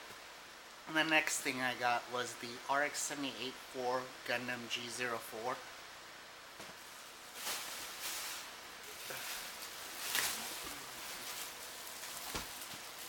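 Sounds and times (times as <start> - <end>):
packaging rustling and crackling: 6.7 - 13.0.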